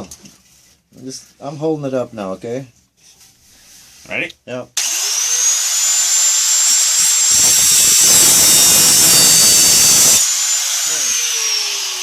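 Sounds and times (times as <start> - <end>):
grinder whining: 4.8 - 12.0
grinding wheel on steel: 4.8 - 12.0.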